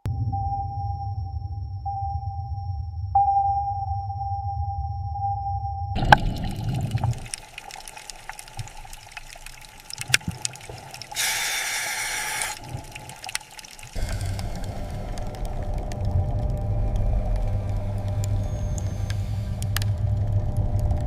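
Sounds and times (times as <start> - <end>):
low rumble: 0.1 - 7.6, 14.0 - 21.0
water trickling and dripping: 6.0 - 21.0
loud hiss: 11.2 - 12.6, 18.1 - 19.9
scattered clicks: 13.2 - 21.0.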